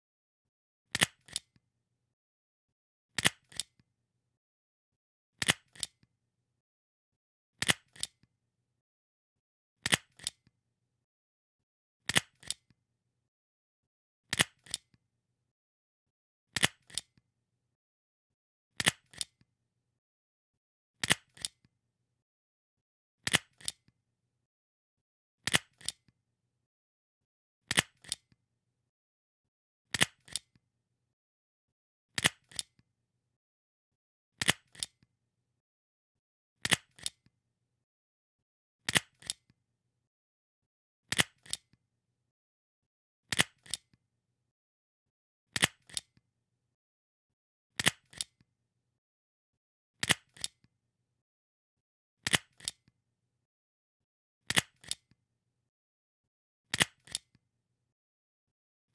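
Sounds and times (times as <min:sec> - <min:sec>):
stapler clicking: 0:23.3 - 0:23.8, 0:27.7 - 0:28.2, 0:34.4 - 0:34.9, 0:47.8 - 0:48.3, 0:50.0 - 0:50.6, 0:52.3 - 0:52.8.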